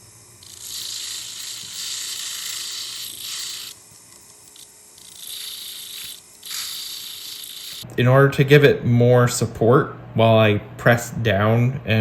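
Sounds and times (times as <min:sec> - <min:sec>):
rotary tool grinding metal: 0:00.0 - 0:07.9.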